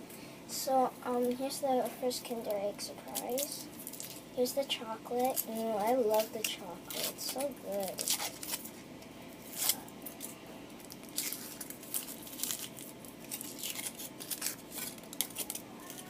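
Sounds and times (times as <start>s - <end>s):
foil wrapper crinkling: 3.0s - 4.4s, 5.2s - 8.8s, 9.4s - 16.0s.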